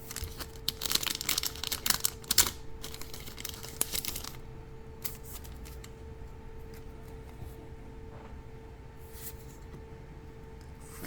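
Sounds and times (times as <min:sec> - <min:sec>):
foil wrapper crinkling and tearing: 0:00.0 - 0:06.0.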